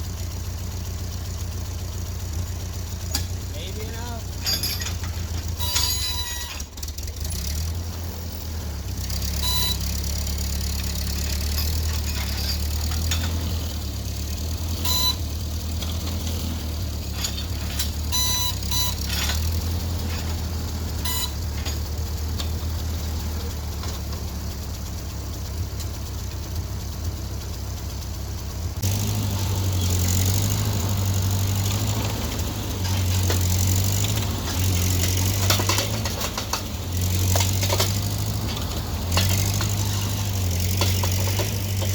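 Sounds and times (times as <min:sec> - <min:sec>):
tractor engine running: 0:00.0 - 0:41.9
short high beeps: 0:05.6 - 0:06.6, 0:09.4 - 0:10.0, 0:14.8 - 0:15.2, 0:18.1 - 0:19.1, 0:21.0 - 0:21.4.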